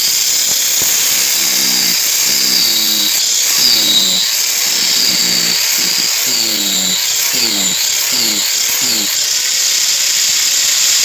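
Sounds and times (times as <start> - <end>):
angle grinder running under load: 0.0 - 11.0.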